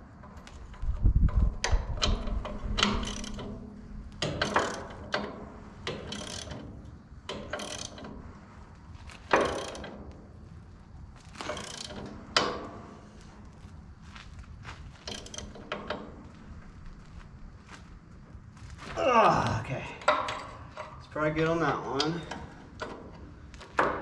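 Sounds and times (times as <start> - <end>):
ratchet wrench clicking: 0.8 - 3.6, 4.2 - 6.7, 7.3 - 8.2, 9.3 - 10.0, 11.5 - 12.5.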